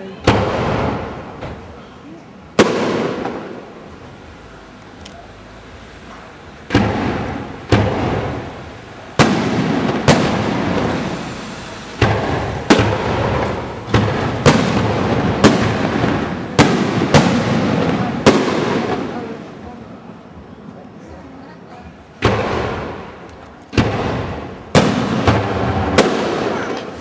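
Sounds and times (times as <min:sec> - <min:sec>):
rumbling echo: 0:00.0 - 0:04.8, 0:05.4 - 0:20.6, 0:22.1 - 0:27.0
firework shells bursting: 0:00.2 - 0:01.8, 0:02.6 - 0:04.0, 0:06.7 - 0:19.6, 0:22.2 - 0:27.0.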